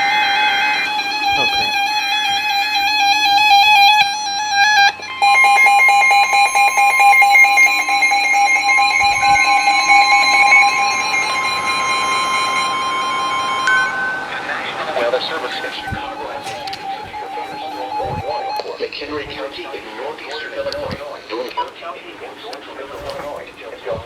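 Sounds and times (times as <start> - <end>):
steady alarm tone: 0.0 - 24.0
warbling digital header burst: 5.2 - 19.6.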